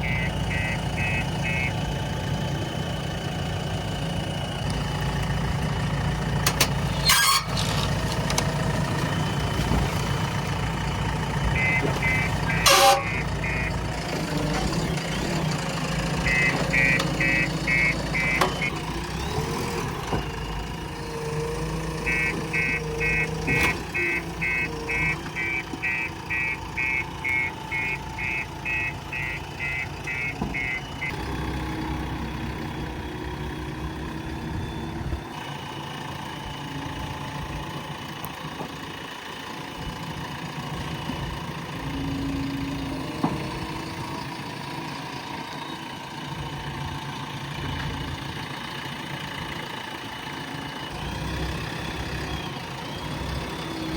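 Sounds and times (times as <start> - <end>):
reversing alarm beeping: 0.0 - 1.9, 11.5 - 13.9, 16.2 - 18.8, 22.0 - 31.2
diesel engine running: 0.0 - 53.9.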